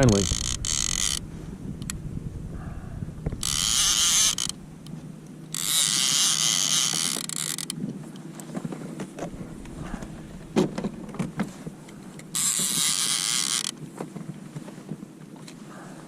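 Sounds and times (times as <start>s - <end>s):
kayak pedal drive creaking: 0.0s - 2.1s, 3.2s - 15.6s.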